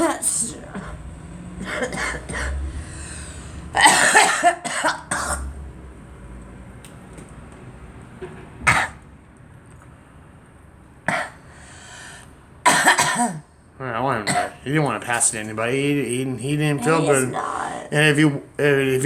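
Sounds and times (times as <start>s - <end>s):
girl coughing: 1.6s - 2.6s, 3.8s - 5.5s, 11.1s - 11.4s, 12.7s - 13.5s, 14.3s - 14.6s, 16.8s - 17.7s.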